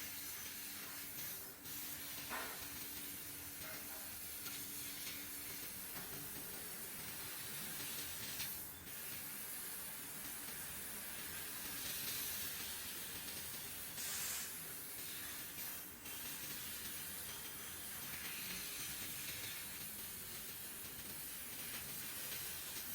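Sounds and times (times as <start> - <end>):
hiss of laser cutter assist gas: 0.0 - 22.9.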